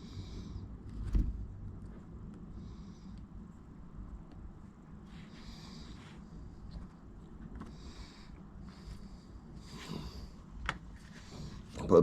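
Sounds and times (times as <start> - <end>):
low steady hum: 0.0 - 12.0
soft rustling bursts: 3.2 - 11.9.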